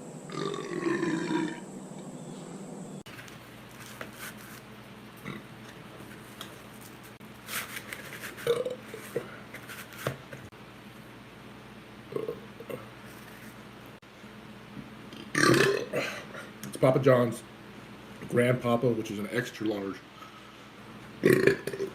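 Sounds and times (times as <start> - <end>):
man burping: 0.3 - 1.6, 5.2 - 5.5, 8.5 - 8.8, 12.1 - 12.9, 15.1 - 16.5, 21.2 - 21.9.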